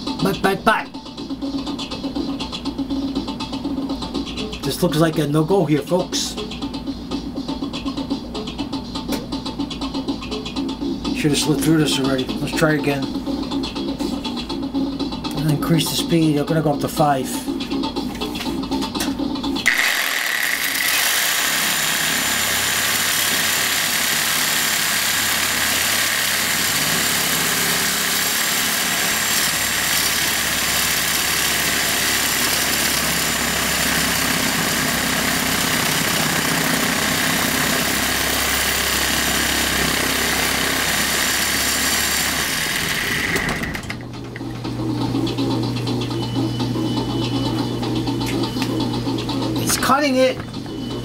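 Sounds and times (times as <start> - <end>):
power saw grinding steel: 19.6 - 43.8.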